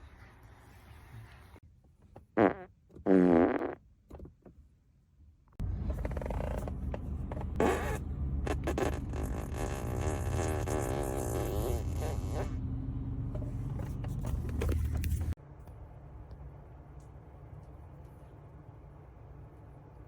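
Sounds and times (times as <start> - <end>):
person farting: 2.4 - 3.8, 7.6 - 12.5.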